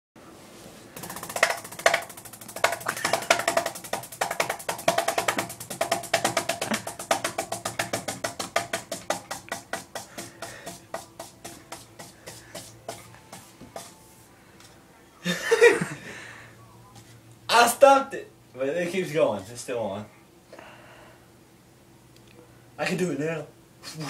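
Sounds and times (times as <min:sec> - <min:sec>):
fan blades slapping a hand: 0:01.0 - 0:14.0.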